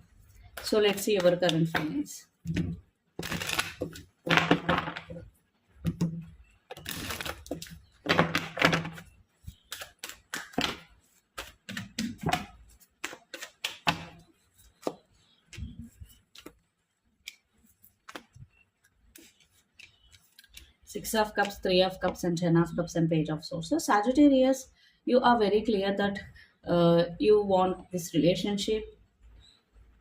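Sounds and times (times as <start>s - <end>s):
cards shuffled and dealt: 3.2s - 5.2s, 6.7s - 20.8s.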